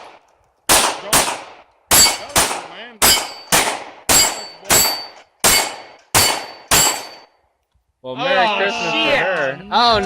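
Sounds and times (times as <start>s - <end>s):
gunshots: 0.0s - 7.3s
ping of hits on steel targets: 0.7s - 7.4s.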